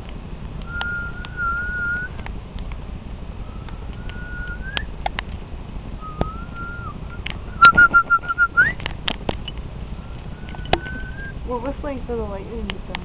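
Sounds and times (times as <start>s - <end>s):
person whistling: 0.7s - 2.1s, 3.5s - 4.9s, 6.0s - 8.8s, 10.0s - 11.4s
sharp clicks: 3.6s - 5.4s.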